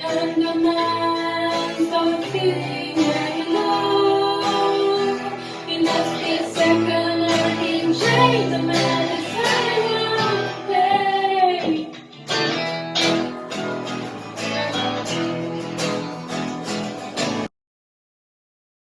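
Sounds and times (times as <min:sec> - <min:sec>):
high voice singing: 0:00.0 - 0:12.0
plucked acoustic guitar: 0:00.0 - 0:17.5.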